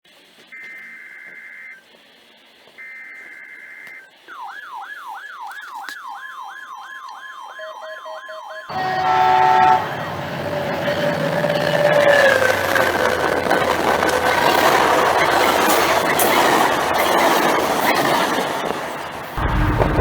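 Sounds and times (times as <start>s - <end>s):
long steady electronic beeps: 0.4s - 19.7s
chord of steady tones: 3.0s - 17.0s
rising and falling siren wail: 4.2s - 17.6s
rushing noise: 8.7s - 20.0s.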